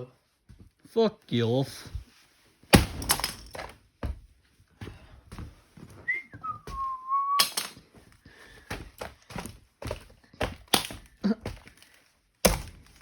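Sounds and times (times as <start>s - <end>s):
knocks and thuds: 2.7s - 4.2s
whistled note: 6.0s - 7.5s.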